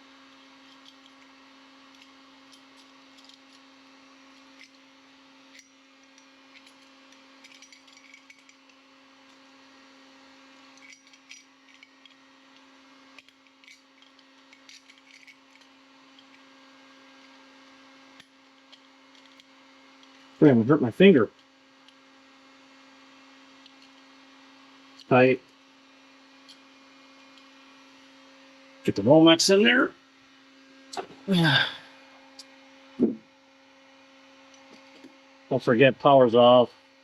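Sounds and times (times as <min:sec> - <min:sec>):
steady low hum: 0:00.0 - 0:37.0
small clicks and metallic scraping: 0:00.3 - 0:09.5, 0:10.7 - 0:16.5, 0:18.1 - 0:20.3, 0:23.5 - 0:24.1, 0:26.3 - 0:27.6.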